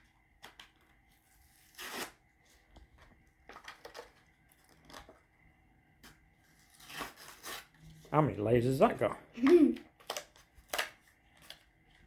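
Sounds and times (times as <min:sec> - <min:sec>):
packaging being torn: 0:01.6 - 0:02.2, 0:10.0 - 0:11.6.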